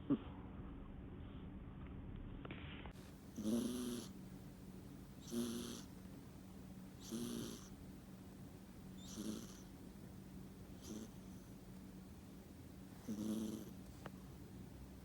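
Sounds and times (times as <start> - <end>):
cat snoring: 3.3 - 4.2, 5.2 - 6.0, 7.0 - 7.8, 9.0 - 9.7, 10.8 - 11.5, 13.0 - 13.8.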